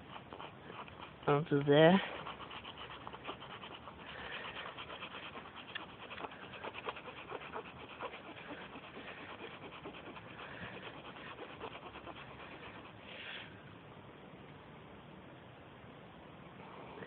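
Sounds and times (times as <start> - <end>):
sandpaper scraping rubber: 0.0 - 13.0.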